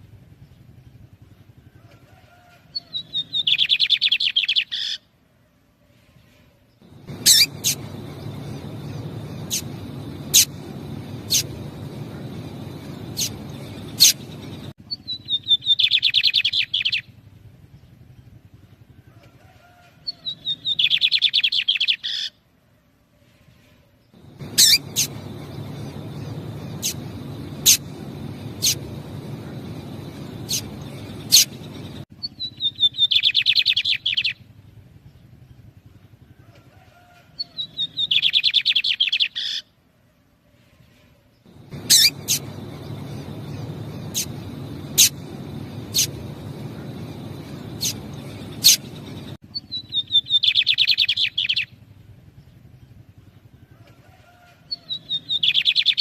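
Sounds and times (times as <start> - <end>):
low steady hiss: 5.1 - 14.7, 23.8 - 32.0, 41.2 - 49.4
birds chattering song: 6.9 - 16.9, 24.2 - 34.3, 41.5 - 51.6
sharp bird call notes: 7.1 - 14.6, 24.3 - 32.0, 41.6 - 49.3.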